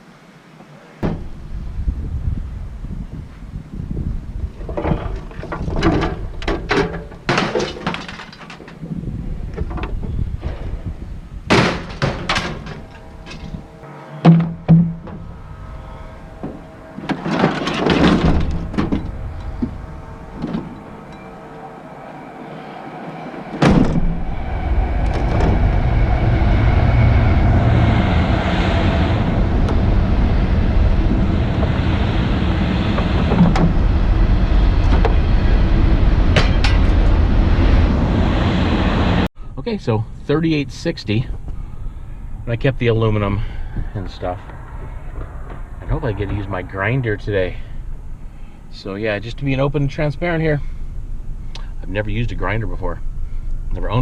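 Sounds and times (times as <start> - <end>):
vehicle engine rumbling: 0.7 - 54.0
scrap metal clanking and dropping: 4.6 - 8.9, 11.5 - 15.4, 16.2 - 21.4, 36.4 - 37.0.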